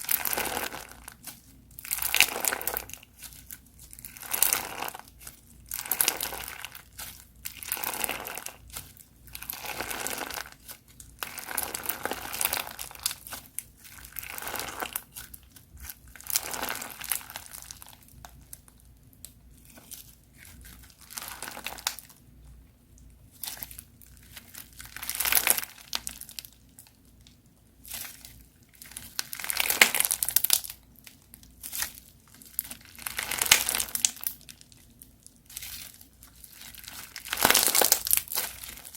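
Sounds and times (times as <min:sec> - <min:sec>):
crunchy slime crackling: 0:00.0 - 0:38.9.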